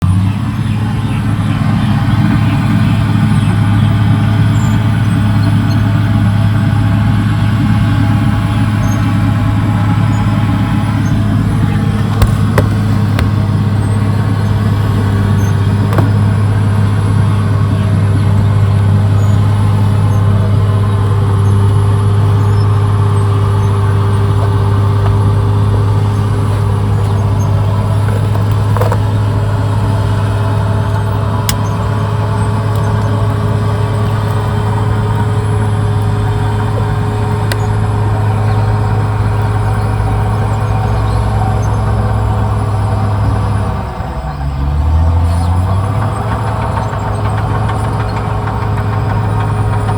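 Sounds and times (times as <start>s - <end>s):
bulldozer diesel engine droning: 0.0s - 49.9s
short sharp knocks: 12.0s - 13.7s, 15.8s - 16.6s.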